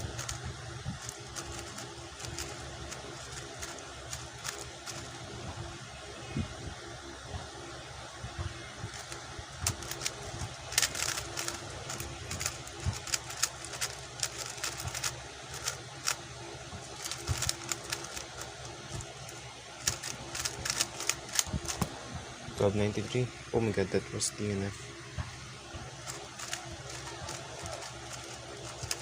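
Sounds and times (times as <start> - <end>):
puzzle cube clicking: 0.0 - 0.4, 1.0 - 5.2, 8.9 - 16.2, 17.0 - 19.1, 19.8 - 21.9, 26.1 - 29.0
steady low hum: 0.0 - 29.0.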